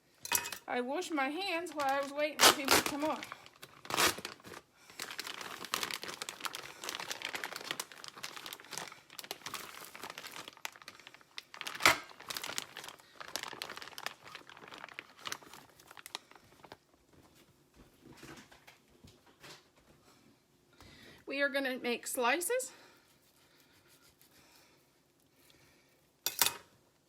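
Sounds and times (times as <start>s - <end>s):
wrapping crinkling: 1.5s - 17.0s.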